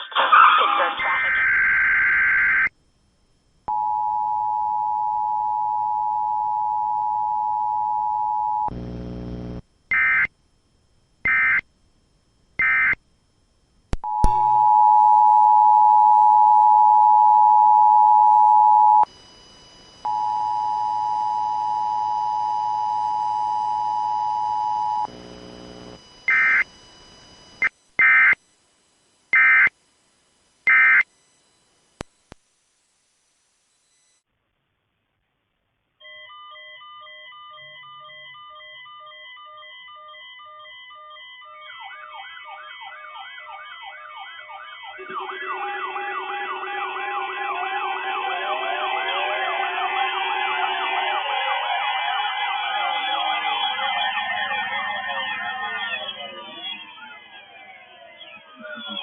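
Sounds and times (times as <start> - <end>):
short low buzzes: 8.7 - 9.7, 25.1 - 26.0
click: 13.9 - 14.4, 32.0 - 32.4
high-pitched data bursts: 44.5 - 59.0
two-tone attention signal: 44.9 - 49.4.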